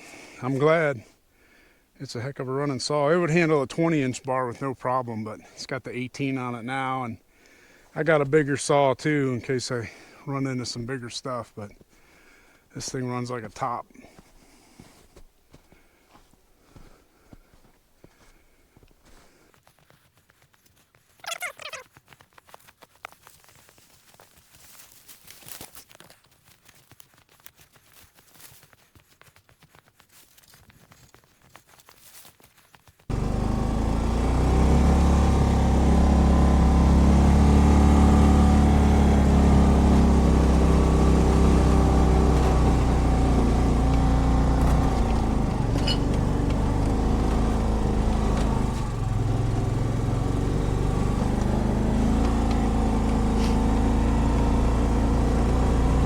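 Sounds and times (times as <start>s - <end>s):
utility vehicle engine running: 33.1s - 56.0s
faint rustling: 37.7s - 53.8s.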